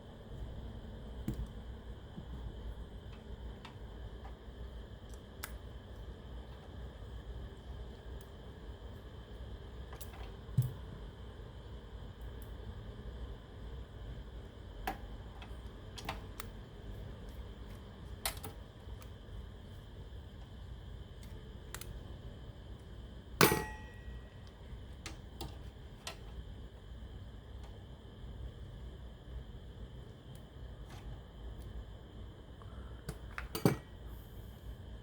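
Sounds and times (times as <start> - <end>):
ringing knock: 23.4 - 24.0.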